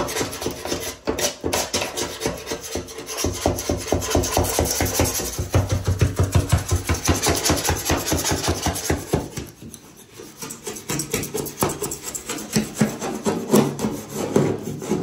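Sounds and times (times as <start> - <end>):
blade scraping caulk off bathtub: 0.0 - 15.0.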